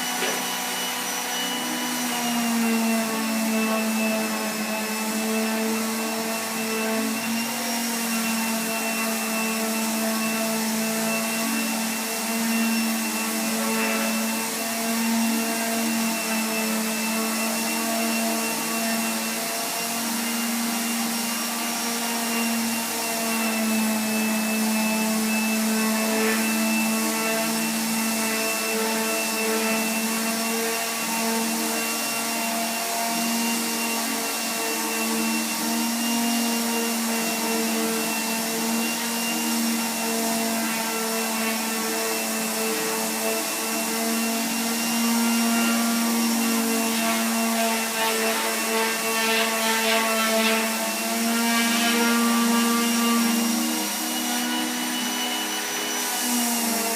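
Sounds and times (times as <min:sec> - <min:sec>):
electric power sander on wood: 0:00.0 - 0:56.9.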